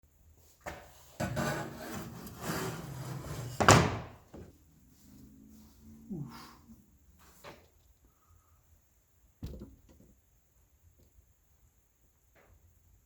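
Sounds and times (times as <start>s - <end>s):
saw rasping through wood: 1.2s - 3.6s.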